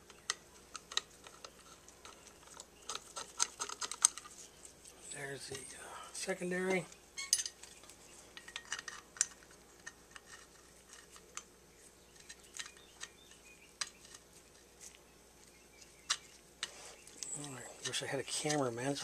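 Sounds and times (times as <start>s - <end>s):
small metal clicks and taps: 0.0s - 4.3s, 6.9s - 11.5s, 12.1s - 14.2s.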